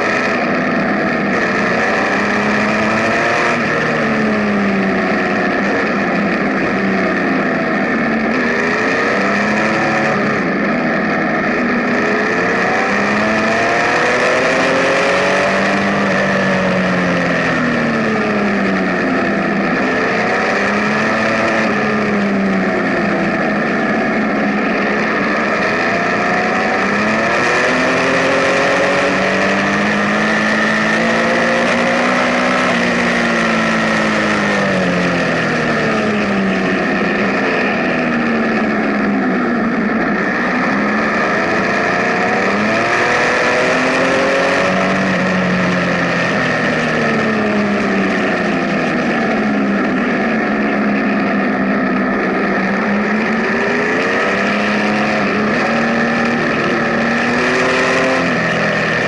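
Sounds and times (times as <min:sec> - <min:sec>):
motorcycle engine revving: 0:00.0 - 0:59.0
steady rushing noise: 0:00.0 - 0:59.0.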